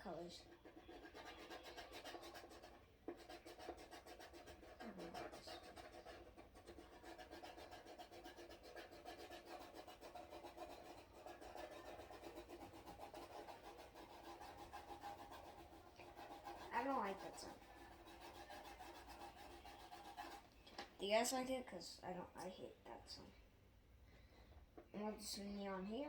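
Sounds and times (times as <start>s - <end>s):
marker scratching on plastic: 0.0s - 20.9s.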